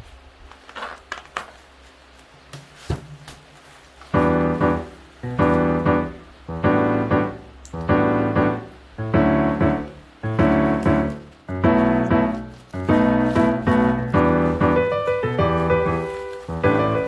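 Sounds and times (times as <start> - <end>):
piano chords: 4.0 - 17.0.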